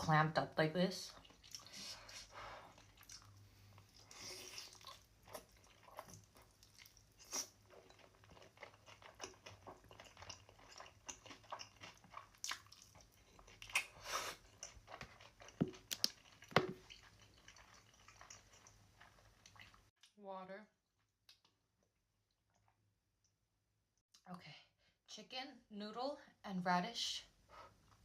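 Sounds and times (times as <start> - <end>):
wet chewing mouth sounds: 1.1 - 19.9.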